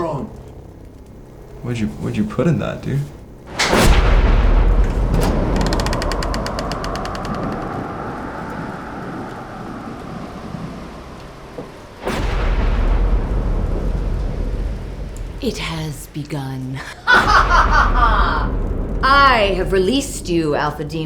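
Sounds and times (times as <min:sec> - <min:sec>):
thunder crash and rumble: 0:03.5 - 0:15.4, 0:17.1 - 0:21.0.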